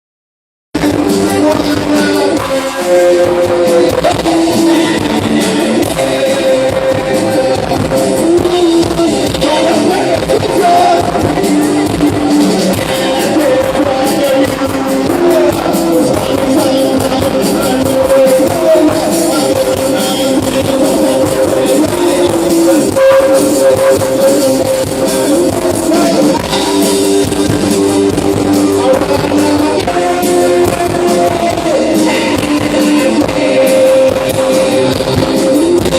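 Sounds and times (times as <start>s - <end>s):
guitar: 0.8s - 35.9s
person singing long notes: 0.8s - 35.9s.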